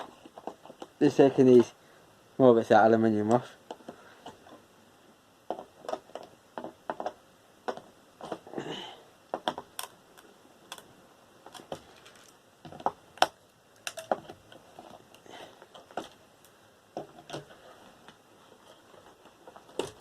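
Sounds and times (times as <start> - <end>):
small metal parts clicking and clattering: 11.5 - 12.8, 13.8 - 16.2.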